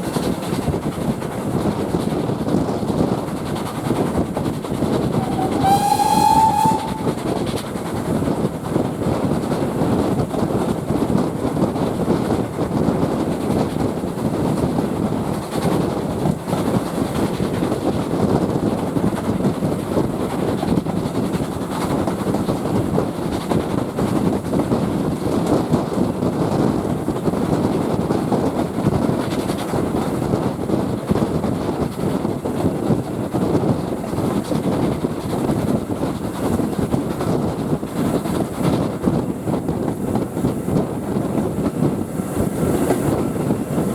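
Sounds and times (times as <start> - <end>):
steam train rumbling on track: 0.0 - 43.9
train whistle: 5.0 - 7.6.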